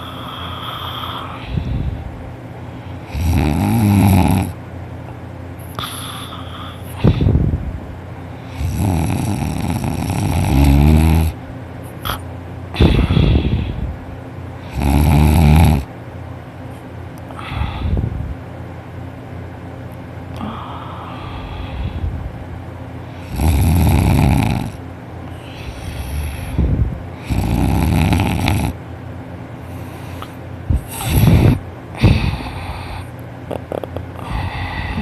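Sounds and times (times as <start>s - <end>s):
person snoring heavily: 0.0s - 1.9s, 3.0s - 4.6s, 5.6s - 7.4s, 8.4s - 11.4s, 12.8s - 13.9s, 14.6s - 15.9s, 23.2s - 28.8s, 29.7s - 35.0s
quiet breathing: 12.8s - 13.9s, 17.3s - 18.1s, 20.3s - 22.2s, 25.3s - 27.4s, 29.6s - 33.2s, 34.0s - 35.0s.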